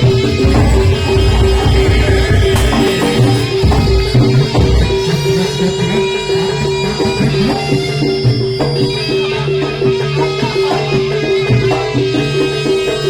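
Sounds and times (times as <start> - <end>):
repeated metallic notes: 0.0 - 6.8
high melody line: 0.0 - 7.8
drums: 0.0 - 13.0.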